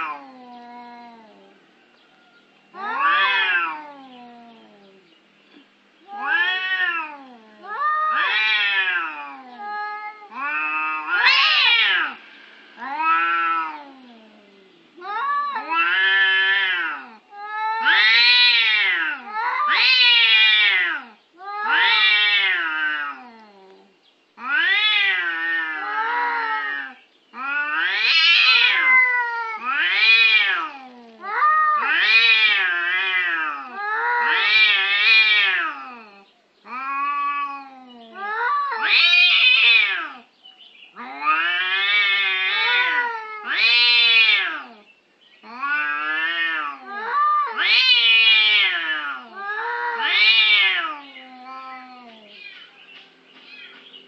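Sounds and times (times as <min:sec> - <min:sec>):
animal wailing: 0:24.4 - 0:40.2.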